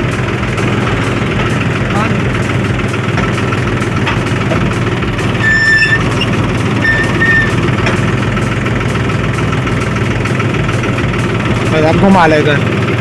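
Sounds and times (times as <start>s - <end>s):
tractor diesel engine running: 0.0s - 13.0s
short high tones: 5.4s - 7.6s.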